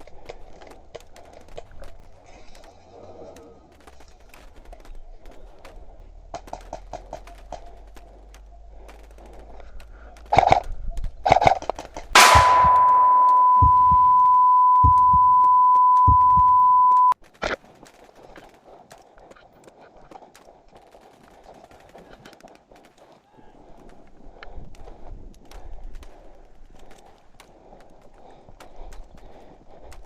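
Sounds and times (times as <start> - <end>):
loud bang: 12.2 - 17.1
steady high beep: 12.2 - 17.2.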